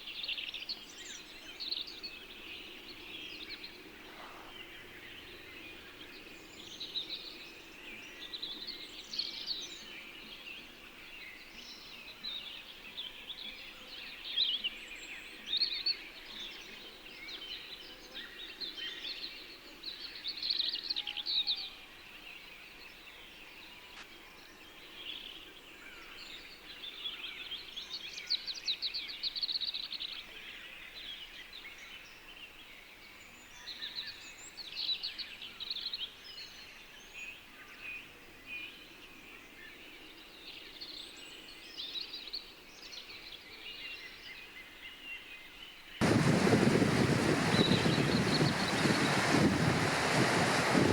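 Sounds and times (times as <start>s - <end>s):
songbirds chirping and singing: 0.0s - 50.9s
faint steady hiss: 46.0s - 50.9s.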